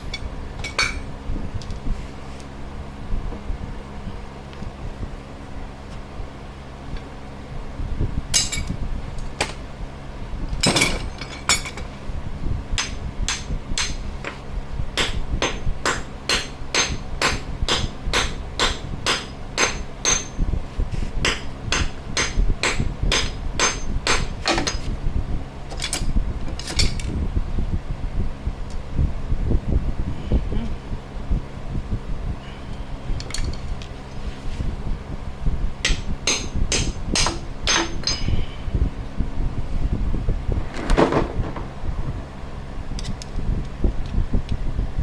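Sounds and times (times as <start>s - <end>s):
hammer blows on metal: 15.0s - 24.9s, 35.8s - 38.8s.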